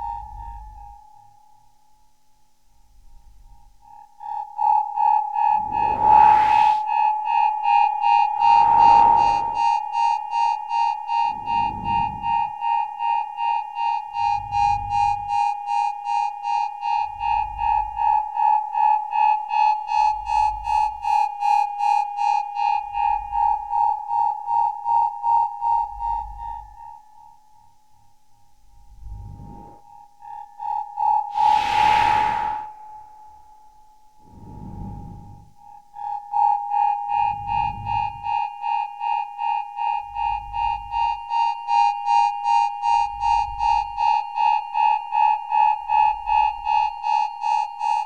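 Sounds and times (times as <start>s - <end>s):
synth swooshes: 5.5s - 6.9s, 8.2s - 10.0s, 31.3s - 33.2s
pulsing high synth tone: 5.6s - 6.8s, 8.2s - 9.8s, 31.4s - 32.9s.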